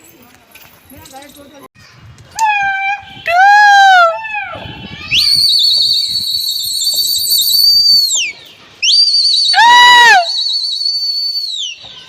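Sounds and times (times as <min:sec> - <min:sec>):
shrill warbling whistle: 0:05.1 - 0:11.9.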